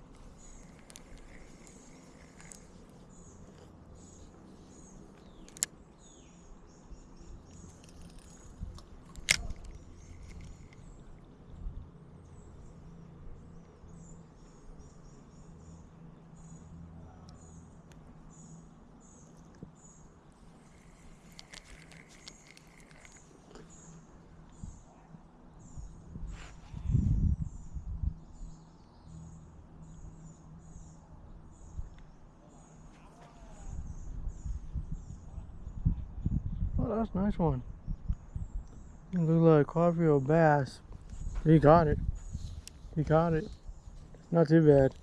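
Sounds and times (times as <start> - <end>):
low steady outdoor hum: 0.0 - 45.0
small birds chirping: 0.0 - 45.0
sharp clicks: 0.4 - 2.8, 5.1 - 5.8, 7.5 - 10.9, 20.6 - 23.6.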